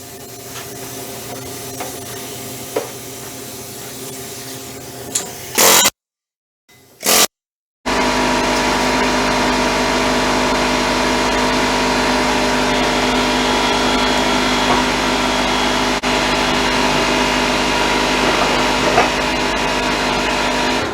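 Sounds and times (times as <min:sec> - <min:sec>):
welding arc hissing: 0:00.0 - 0:05.9.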